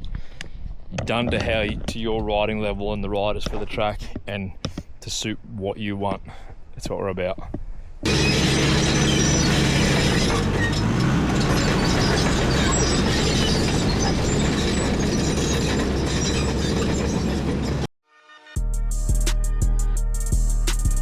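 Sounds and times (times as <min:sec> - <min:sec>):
diesel engine running: 0:08.1 - 0:17.9
steel tracks clanking: 0:08.1 - 0:17.9.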